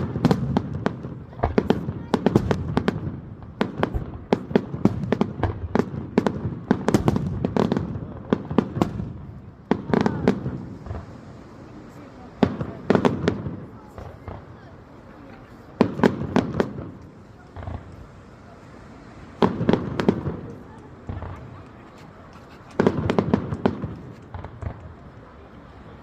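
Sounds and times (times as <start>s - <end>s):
fireworks bangs and crackles: 0.0s - 26.0s.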